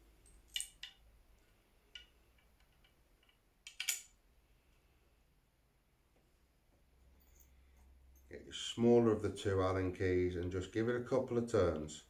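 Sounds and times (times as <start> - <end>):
small metal clicks and taps: 0.5 - 1.0, 1.9 - 4.2.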